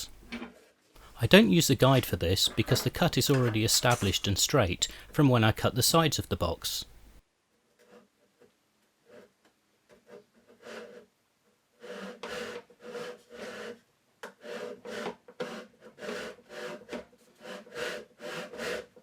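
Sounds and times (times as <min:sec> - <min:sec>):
hand saw cutting wood: 0:01.0 - 0:05.2, 0:10.1 - 0:11.1, 0:11.7 - 0:19.0.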